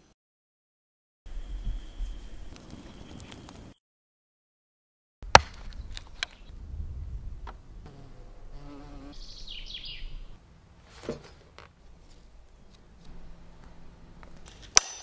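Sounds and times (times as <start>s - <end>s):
insect buzzing: 7.8s - 10.4s
high falling chirp: 9.2s - 10.4s.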